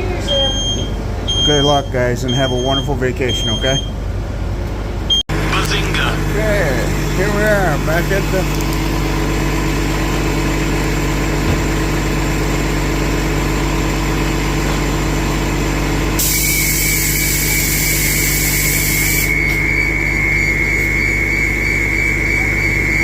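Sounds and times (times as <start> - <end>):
bus engine idling: 0.0 - 23.0
high warning tone: 0.1 - 4.0, 5.1 - 9.8, 16.2 - 23.0
air brake hiss: 16.2 - 19.3.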